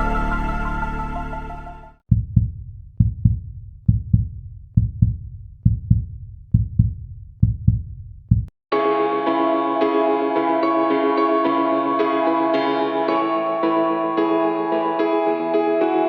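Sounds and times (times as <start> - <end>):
music: 0.0 - 2.0, 8.7 - 16.0
heartbeat thumps: 2.1 - 8.5.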